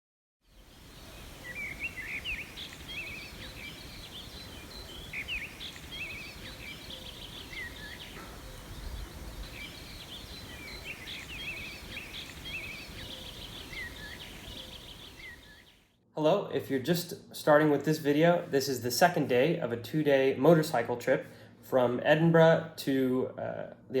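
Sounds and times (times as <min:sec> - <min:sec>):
outdoor background hiss: 0:00.4 - 0:24.0
small birds chirping: 0:00.5 - 0:15.8.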